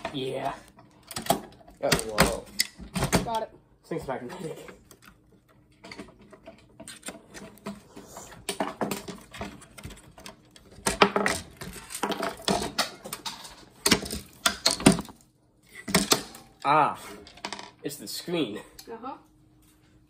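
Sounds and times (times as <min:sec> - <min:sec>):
small parts and tools clattering: 0:00.0 - 0:03.4, 0:04.1 - 0:17.9.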